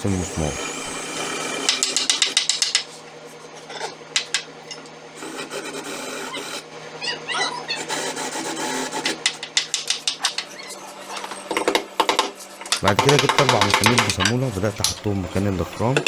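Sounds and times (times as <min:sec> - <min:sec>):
cordless drill countersinking plywood: 0:11.5 - 0:16.0.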